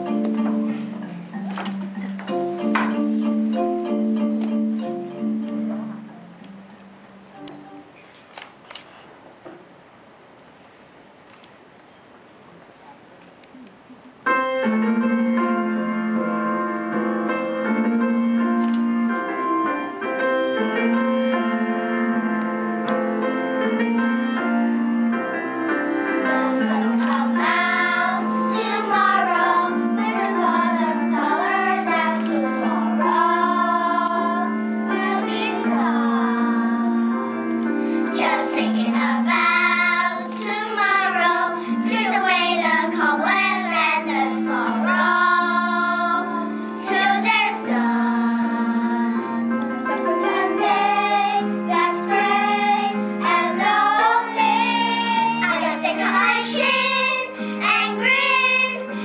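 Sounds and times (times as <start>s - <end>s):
instrumental accompaniment: 0.0s - 8.4s, 13.5s - 59.0s
children singing together: 26.0s - 59.0s.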